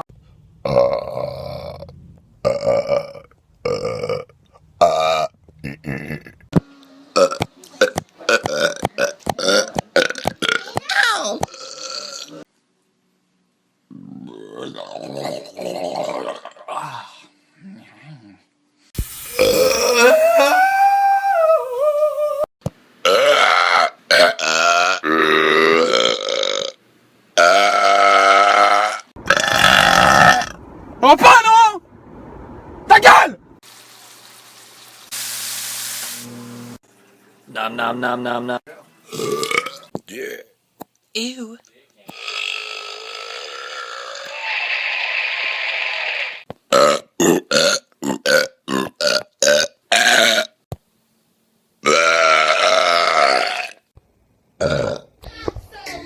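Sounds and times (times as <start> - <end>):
person burping loudly: 0.6 - 6.6, 7.2 - 12.5, 14.0 - 17.3, 19.4 - 20.2, 23.0 - 26.8, 27.4 - 30.6, 39.1 - 40.5, 42.1 - 44.4, 46.7 - 50.6, 51.8 - 53.9, 54.6 - 55.1.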